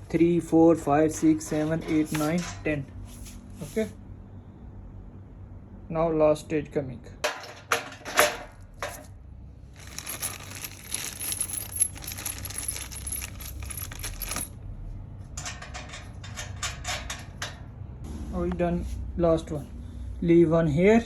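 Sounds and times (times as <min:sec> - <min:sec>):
metal hardware clinking and rattling: 0:09.8 - 0:14.6, 0:15.4 - 0:17.6.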